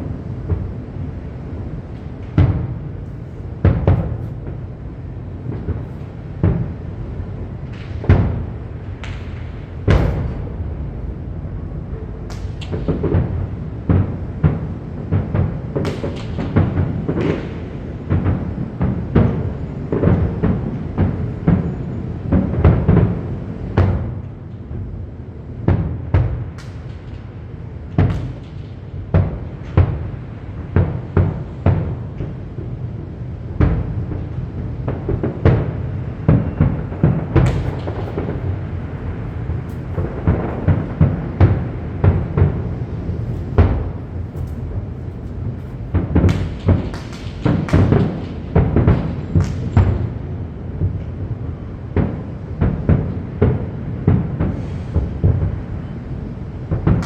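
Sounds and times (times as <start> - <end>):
fireworks booming: 0.0 - 24.2, 33.4 - 50.1
fireworks crackling: 0.5 - 13.6, 33.8 - 49.7.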